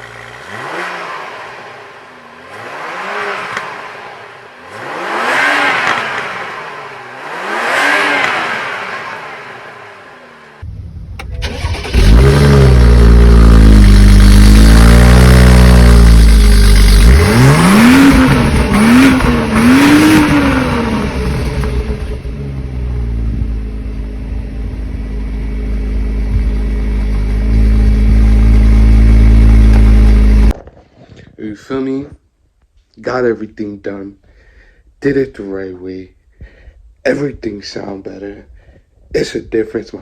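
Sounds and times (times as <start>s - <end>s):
car exhaust revving and idling: 0.0s - 30.6s.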